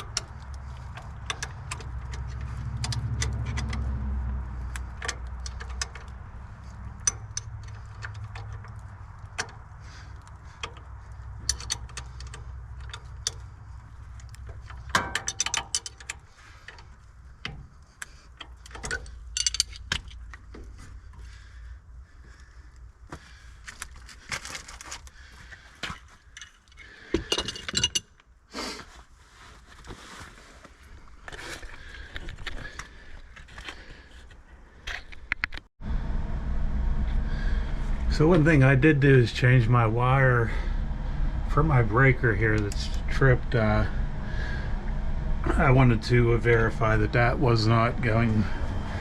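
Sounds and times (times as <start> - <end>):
metal tools clinking and rattling: 0.0 - 21.2, 25.8 - 28.2
low steady hum: 35.8 - 49.0.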